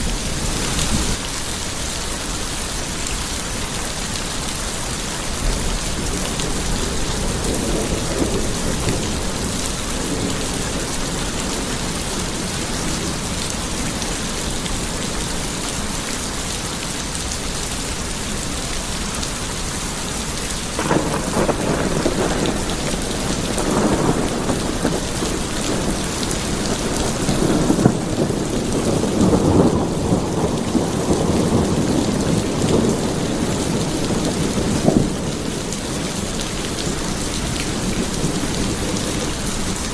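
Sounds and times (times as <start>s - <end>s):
steady rain falling: 0.0s - 39.9s
thunder rumbling: 5.3s - 15.4s, 20.8s - 39.9s.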